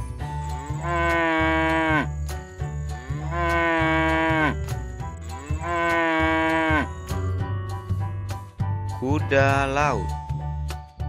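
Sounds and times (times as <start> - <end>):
background music: 0.0 - 11.0
cow mooing: 0.7 - 2.1, 3.0 - 4.6, 5.4 - 6.9.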